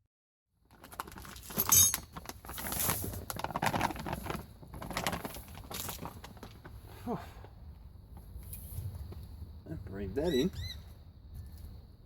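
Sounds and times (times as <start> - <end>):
hard objects clinking and scraping: 0.7 - 6.4.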